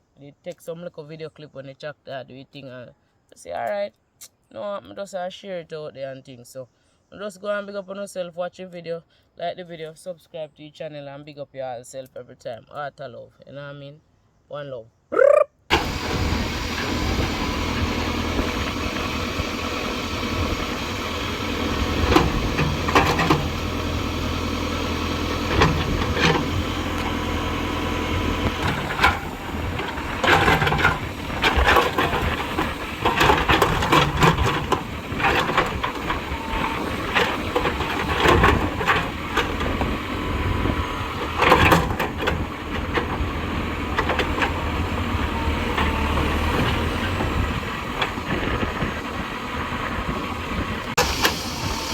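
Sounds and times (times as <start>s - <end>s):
tractor diesel engine under load: 15.7s - 51.9s
knocks and scraping of earth and rock: 16.2s - 49.2s.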